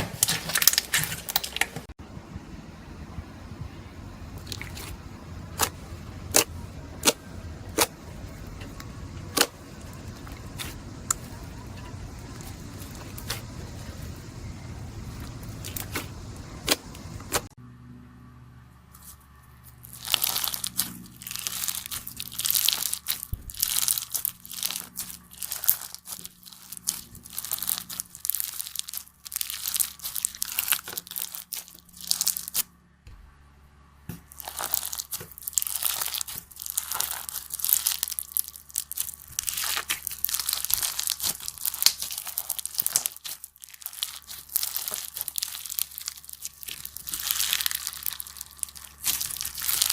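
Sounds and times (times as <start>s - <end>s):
slime crackling and popping: 0.0s - 1.8s, 8.8s - 14.1s, 15.1s - 17.5s, 19.8s - 32.6s, 34.3s - 49.9s.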